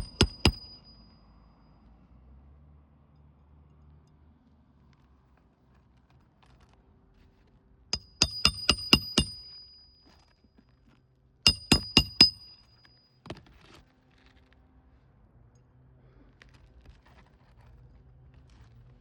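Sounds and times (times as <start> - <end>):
hammer striking nails: 0.0 - 0.8, 8.0 - 9.9, 11.5 - 12.7.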